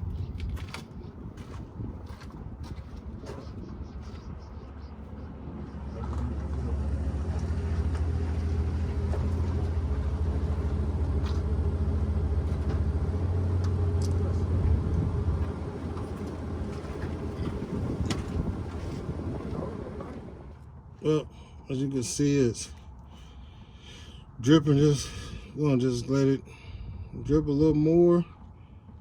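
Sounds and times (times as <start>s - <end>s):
vehicle engine rumbling: 0.0s - 29.0s.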